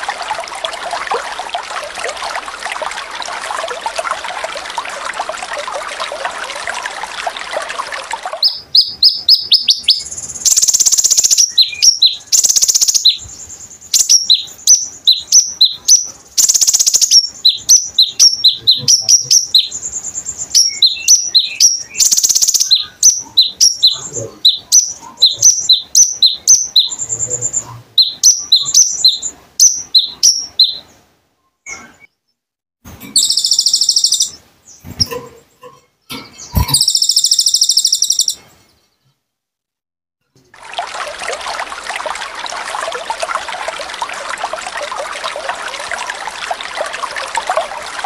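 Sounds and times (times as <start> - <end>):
bird chirping: 8.4 - 32.4, 33.0 - 39.2
buzzy bird trills: 33.2 - 38.4.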